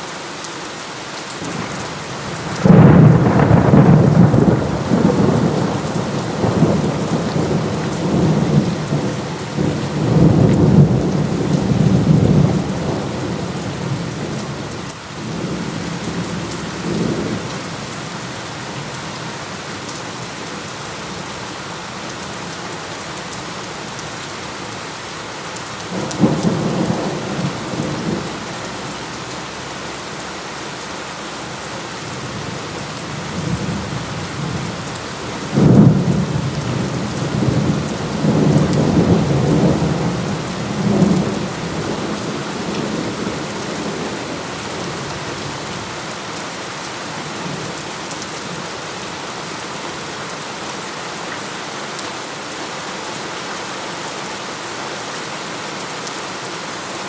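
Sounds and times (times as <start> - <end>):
heavy rain: 0.0 - 57.0
rolling thunder: 1.6 - 17.6, 25.9 - 29.6, 32.1 - 45.9.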